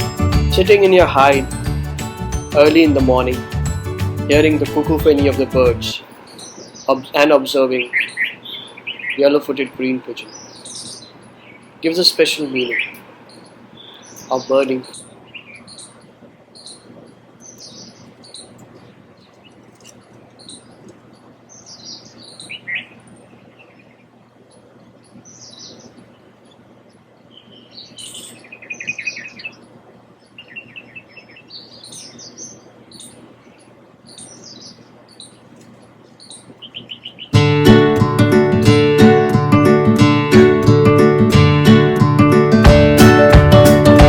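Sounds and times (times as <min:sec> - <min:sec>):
small birds chirping: 0:00.0 - 0:40.3
bird trills: 0:05.9 - 0:37.4.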